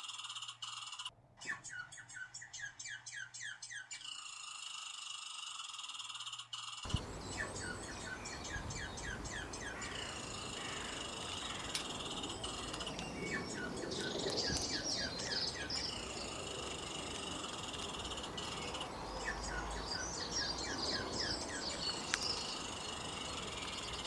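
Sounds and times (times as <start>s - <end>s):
high-pitched insect drone: 5.4s - 19.8s
rapid falling chirping calls: 6.9s - 24.0s.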